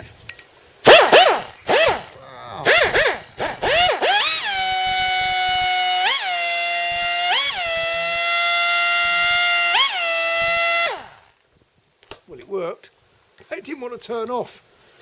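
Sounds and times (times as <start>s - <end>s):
pneumatic cut-off tool whining: 0.8s - 11.4s.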